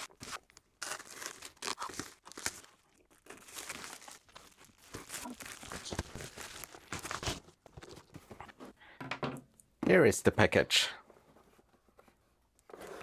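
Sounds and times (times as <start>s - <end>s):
packaging tearing and crinkling: 0.0s - 8.1s.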